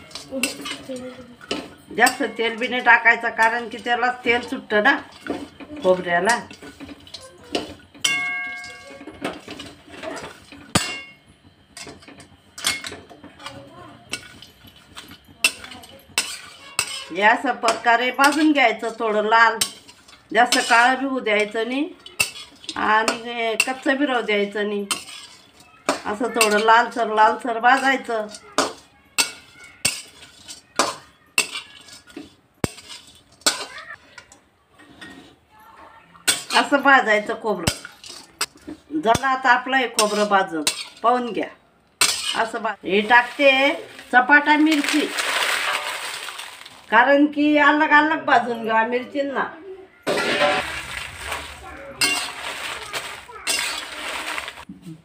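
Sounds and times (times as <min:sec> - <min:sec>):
metal utensil scraping a pan: 0:00.0 - 0:11.2, 0:11.8 - 0:35.4, 0:36.2 - 0:46.9, 0:50.0 - 0:54.7
ringing clank on pan: 0:06.3 - 0:18.6, 0:27.8 - 0:32.9.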